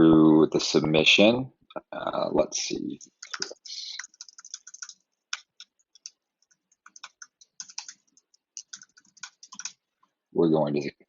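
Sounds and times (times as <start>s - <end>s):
typing on computer keyboard: 3.0s - 9.8s.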